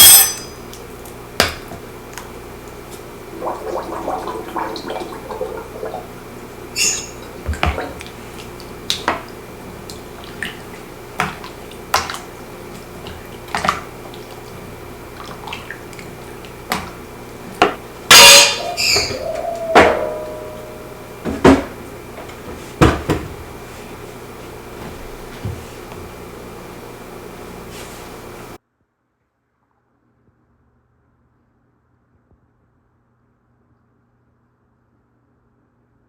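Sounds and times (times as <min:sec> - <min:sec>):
loud clatter with ringing tone: 0:00.0 - 0:00.6.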